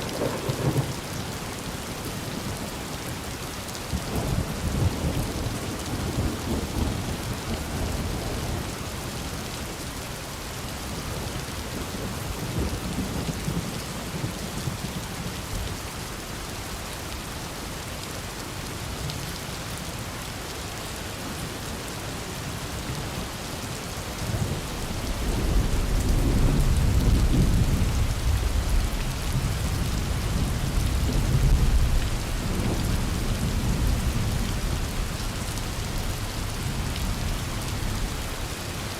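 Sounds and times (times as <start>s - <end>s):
rumbling thunder: 0.0s - 1.1s, 24.3s - 38.4s
heavy rain: 0.0s - 38.9s.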